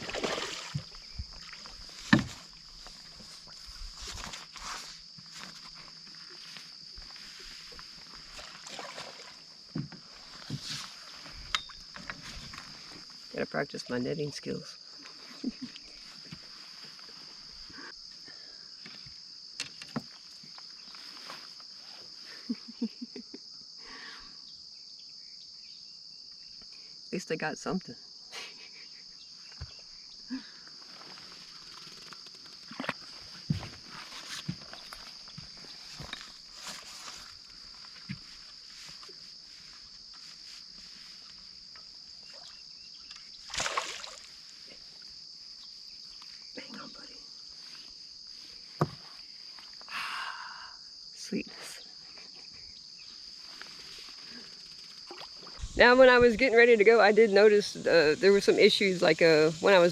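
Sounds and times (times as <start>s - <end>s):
water splash: 0.0s - 1.7s, 8.4s - 9.4s, 43.4s - 44.4s
crickets and insects chirping: 0.0s - 59.9s.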